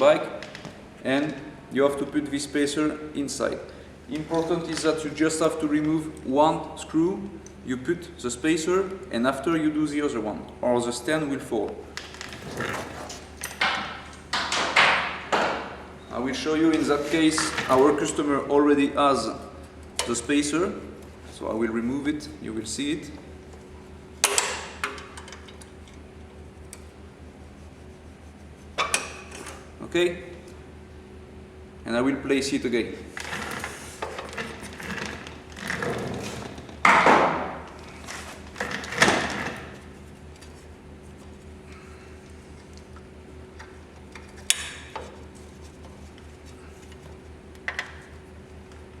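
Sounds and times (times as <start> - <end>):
steady low hum: 0.0 - 49.0.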